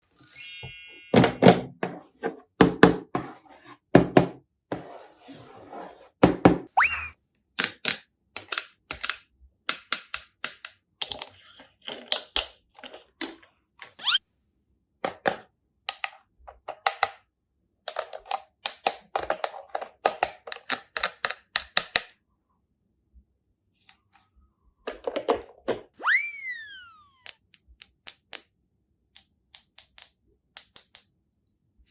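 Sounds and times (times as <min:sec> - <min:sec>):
sparkly chime: 0:00.1 - 0:01.2.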